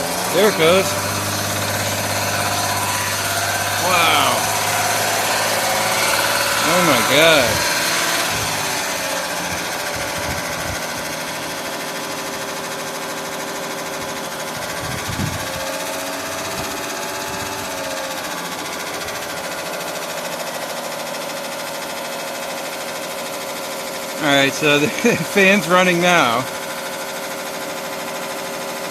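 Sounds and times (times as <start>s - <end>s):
air conditioner fan clattering: 0.0s - 13.3s.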